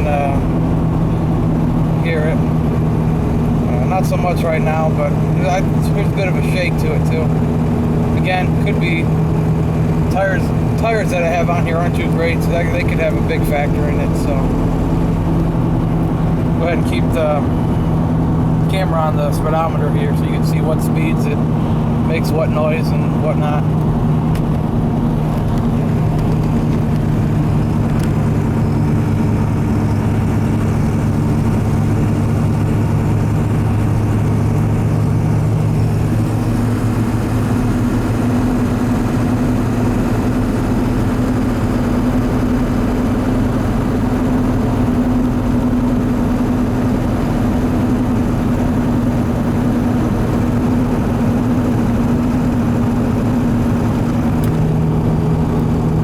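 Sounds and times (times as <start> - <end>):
diesel truck engine hum: 0.0 - 56.0.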